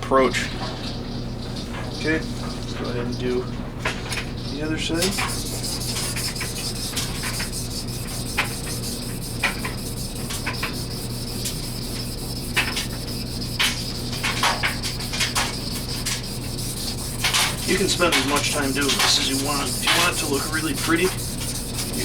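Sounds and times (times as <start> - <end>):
knife scraping on water stone: 5.1 - 22.0.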